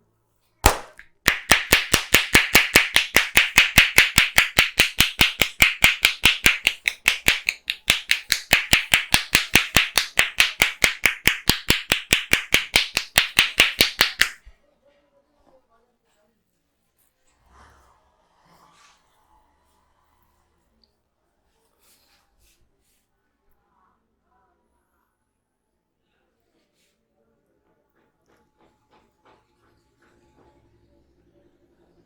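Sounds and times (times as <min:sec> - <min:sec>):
hands slapping on head: 0:00.6 - 0:14.5.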